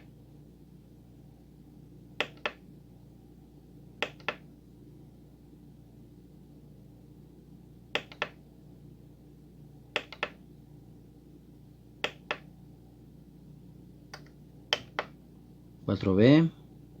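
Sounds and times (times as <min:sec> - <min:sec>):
faint steady hum: 0:00.0 - 0:17.0
keyboard buttons clicking: 0:02.2 - 0:02.6, 0:04.0 - 0:04.4, 0:07.9 - 0:08.4, 0:10.0 - 0:10.4, 0:12.0 - 0:12.5, 0:14.1 - 0:15.1.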